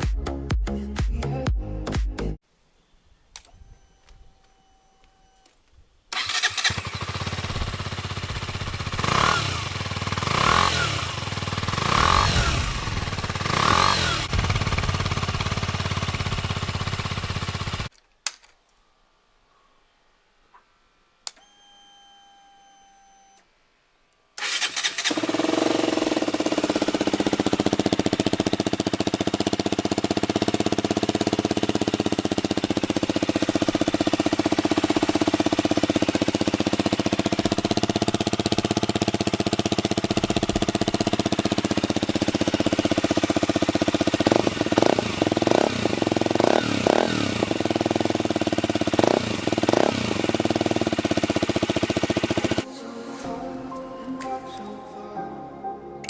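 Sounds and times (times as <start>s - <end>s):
motorcycle engine starting and idling: 3.4s - 17.9s, 24.4s - 52.7s
motorcycle engine revving: 6.1s - 17.9s, 24.4s - 52.7s.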